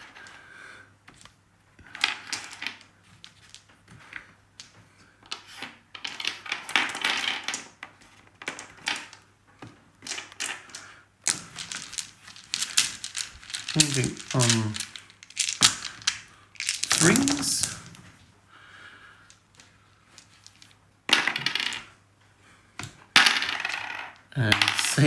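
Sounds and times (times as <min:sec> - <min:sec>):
dice clattering on a tabletop: 0:01.9 - 0:03.7, 0:05.3 - 0:09.2, 0:10.0 - 0:17.9, 0:19.3 - 0:21.9, 0:23.2 - 0:25.0.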